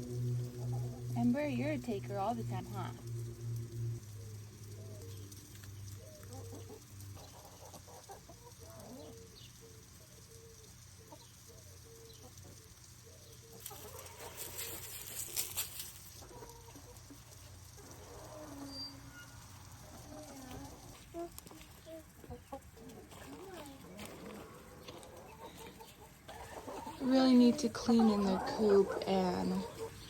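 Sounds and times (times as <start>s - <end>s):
rustling and clatter: 13.6s - 16.5s
hens clucking: 19.6s - 30.0s.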